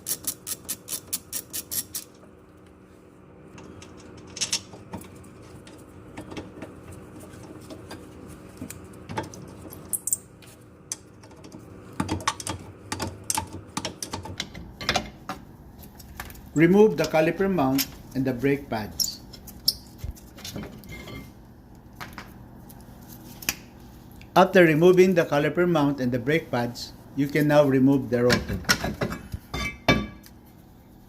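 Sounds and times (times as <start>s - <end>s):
ratchet wrench clicking: 0.0s - 2.1s.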